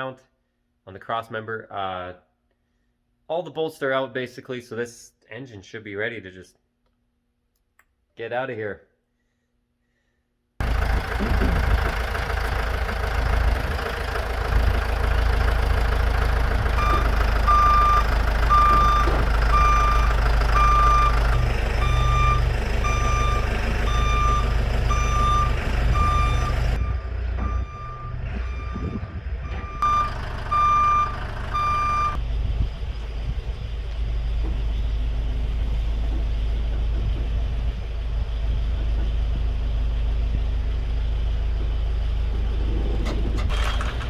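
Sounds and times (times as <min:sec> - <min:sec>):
vehicle engine running: 0:10.6 - 0:44.0
reverse warning beeper: 0:16.8 - 0:32.2.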